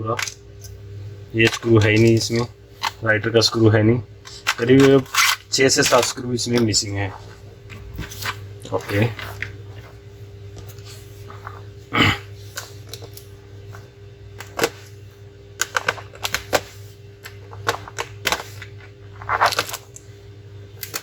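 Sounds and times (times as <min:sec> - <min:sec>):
low hum: 0:00.0 - 0:15.5.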